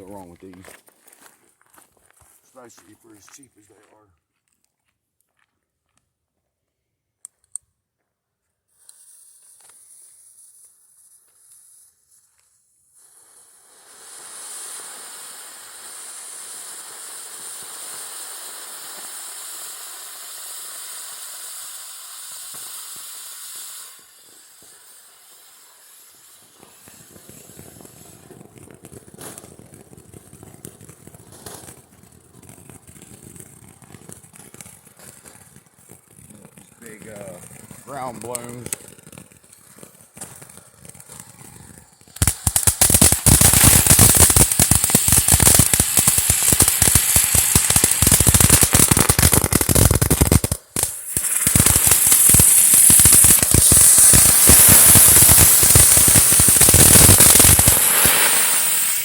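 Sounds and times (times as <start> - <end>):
fuse hissing: 8.8 - 12.0, 13.0 - 28.2, 42.1 - 59.0
firework fountain spraying: 8.8 - 59.0.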